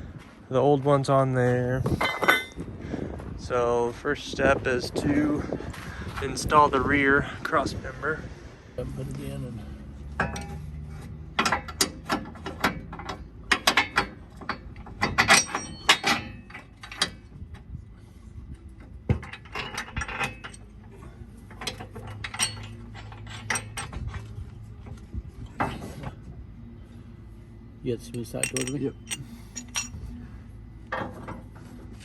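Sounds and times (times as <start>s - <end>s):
metal clanks and clicks: 10.2s - 17.3s, 19.1s - 24.4s, 28.1s - 30.0s.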